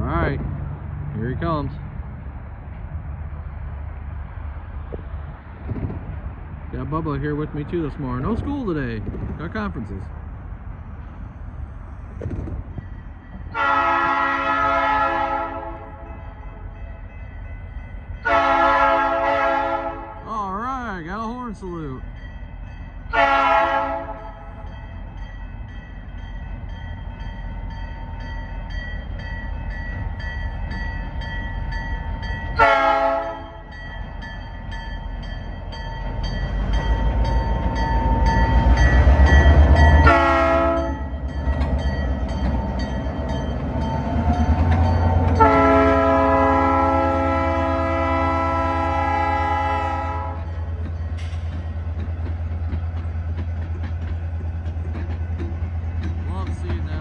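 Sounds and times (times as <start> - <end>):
diesel engine rumbling: 0.0 - 28.2
locomotive air horn blasts: 13.5 - 16.1, 18.2 - 20.2, 23.1 - 24.5, 32.6 - 33.6, 40.0 - 41.1, 45.4 - 50.5
grade-crossing bell ringing: 15.8 - 18.8, 20.3 - 23.4, 24.0 - 46.2, 50.4 - 57.0.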